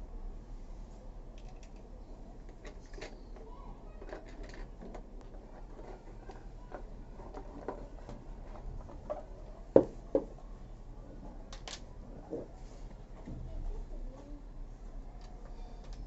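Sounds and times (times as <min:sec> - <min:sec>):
plastic parts clicking and knocking: 0:02.4 - 0:10.3.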